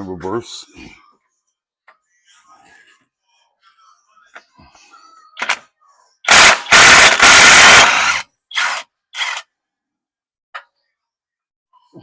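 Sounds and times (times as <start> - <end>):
pneumatic impact wrench hammering: 6.3 - 9.4.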